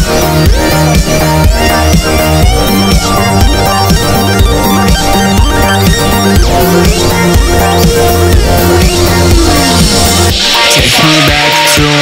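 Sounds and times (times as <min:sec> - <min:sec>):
falling synth sweep: 0:00.0 - 0:11.9
electronic hip-hop beat: 0:00.0 - 0:12.0
person rapping: 0:10.4 - 0:12.0.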